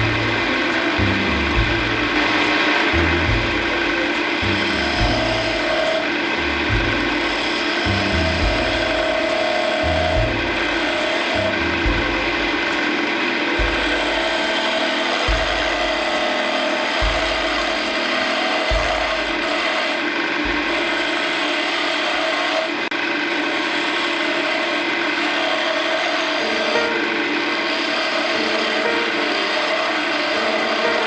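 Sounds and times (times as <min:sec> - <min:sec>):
wood lathe rasping: 0:00.0 - 0:31.0
low thud: 0:11.7 - 0:12.8.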